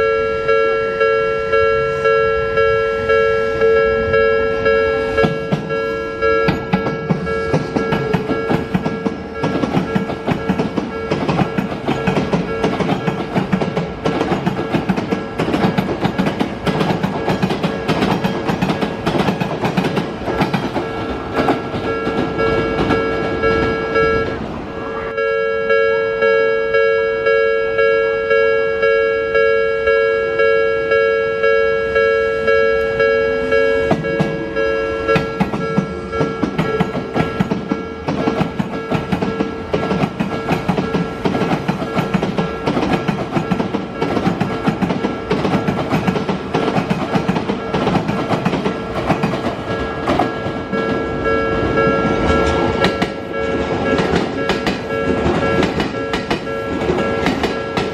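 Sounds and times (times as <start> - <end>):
level crossing bell ringing: 0.0 - 16.6, 20.2 - 57.9
train wheels clacking on rails: 5.1 - 24.6, 33.9 - 57.9.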